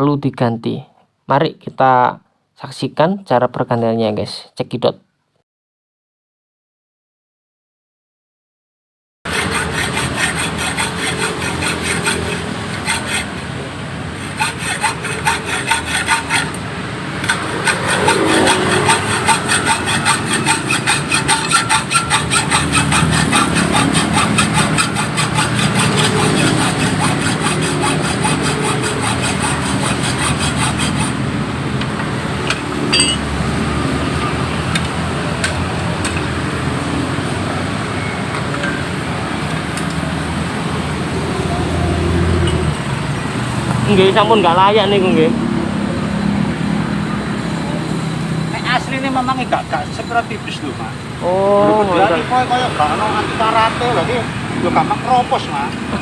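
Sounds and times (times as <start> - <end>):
hacksaw cutting metal pipe: 9.3 - 13.5, 14.2 - 16.6, 17.2 - 31.2, 32.5 - 33.3.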